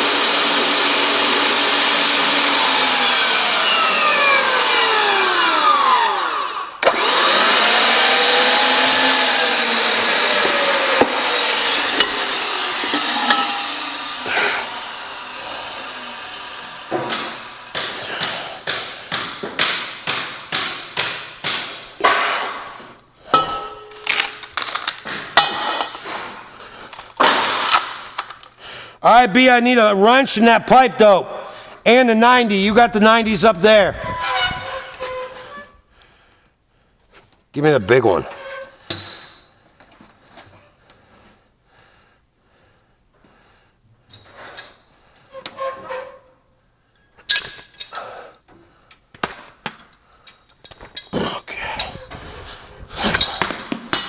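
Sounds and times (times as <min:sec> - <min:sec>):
man breathing hard: 0:14.2 - 0:16.2, 0:17.9 - 0:19.4, 0:28.0 - 0:29.0, 0:35.9 - 0:37.1, 0:40.9 - 0:45.3, 0:47.8 - 0:49.1, 0:51.2 - 0:54.0
sharp knocks: 0:16.9 - 0:22.3.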